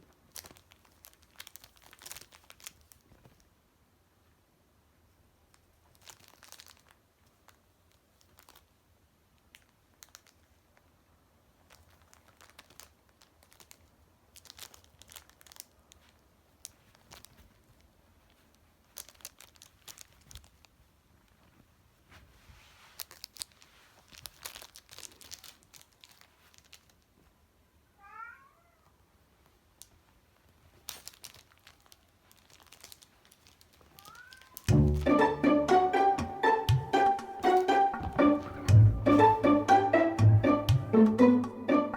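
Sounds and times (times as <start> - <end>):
wrappers crinkling and rustling: 0.0 - 3.6, 5.4 - 27.4, 29.2 - 34.7.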